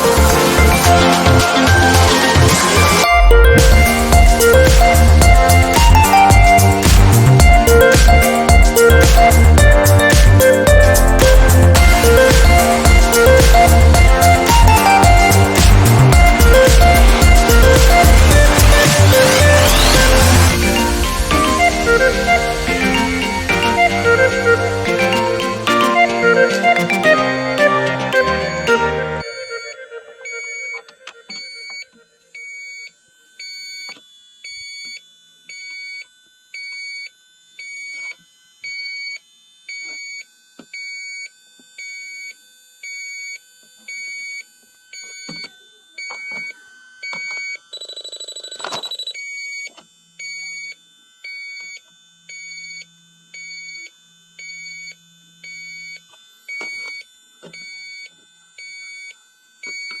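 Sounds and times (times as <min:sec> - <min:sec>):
high-pitched electronic beeps: 0:00.0 - 0:31.8.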